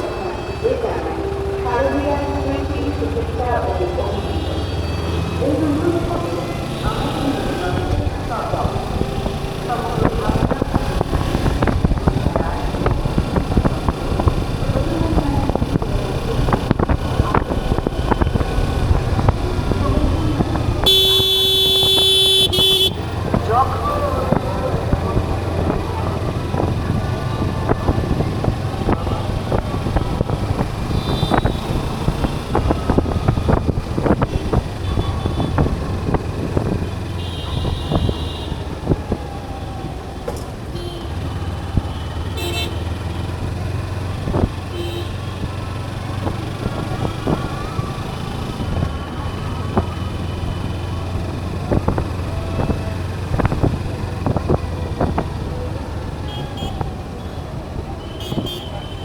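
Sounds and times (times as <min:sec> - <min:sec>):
vehicle horns honking: 0:00.0 - 0:10.6, 0:17.8 - 0:24.0, 0:28.8 - 0:32.8, 0:34.0 - 0:38.8, 0:40.7 - 0:43.4, 0:44.6 - 0:45.6, 0:56.2 - 0:59.0
motorcycle engine: 0:00.0 - 0:59.0
road noise: 0:00.0 - 0:59.0.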